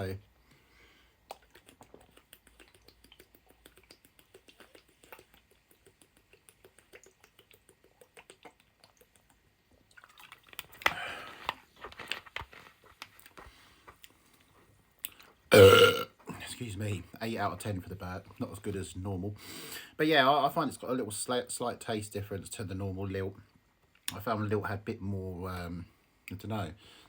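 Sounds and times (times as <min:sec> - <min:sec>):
mouth clicks and smacks: 0:01.2 - 0:11.0
swallowing and sipping fizzy drink: 0:15.1 - 0:16.0.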